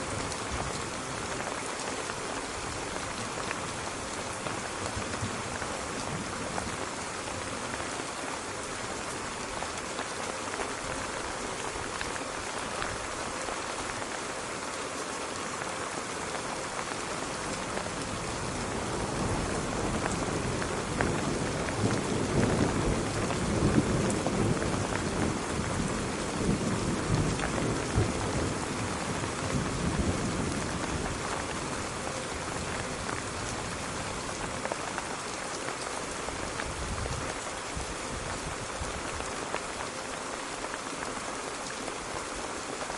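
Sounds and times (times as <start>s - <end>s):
heavy rain: 0.0s - 42.9s
low rumble of thunder: 17.6s - 34.6s.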